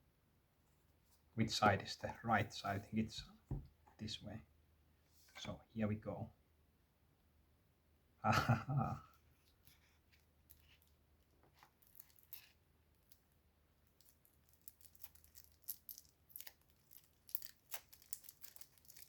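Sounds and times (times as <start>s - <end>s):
packaging clicks and crinkles: 11.6s - 13.2s, 13.9s - 19.0s.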